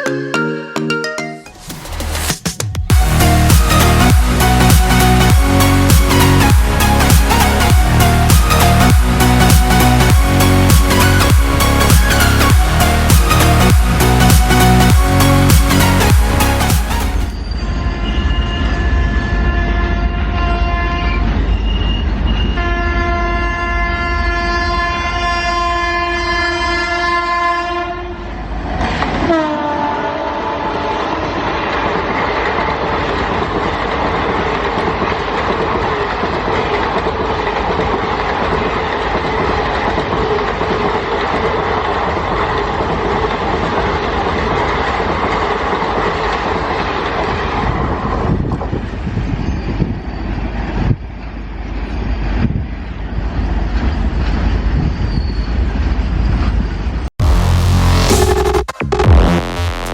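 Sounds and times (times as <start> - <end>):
train coaches rushing past: 2.0 - 23.3, 28.2 - 57.1
locomotive horn honking: 2.9 - 21.3, 22.5 - 28.3, 29.2 - 31.2.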